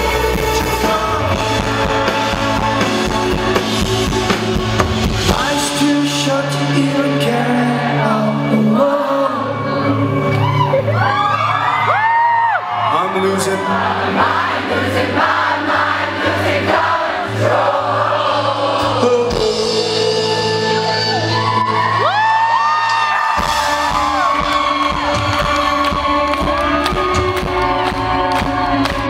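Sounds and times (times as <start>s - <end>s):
bass guitar: 0.0s - 29.0s
live rock band playing: 0.0s - 29.0s
person singing sustained vocals: 5.2s - 10.4s, 16.3s - 22.1s.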